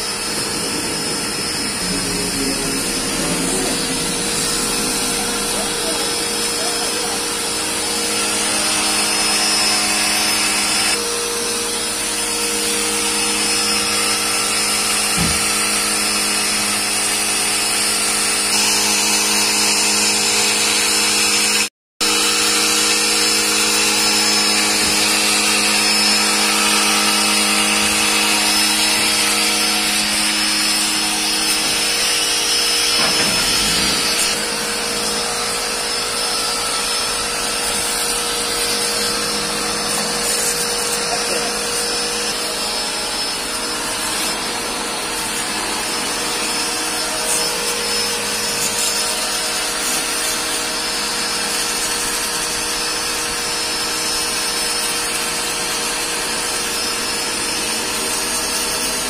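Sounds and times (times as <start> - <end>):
small electric motor hissing: 0.0 - 59.0.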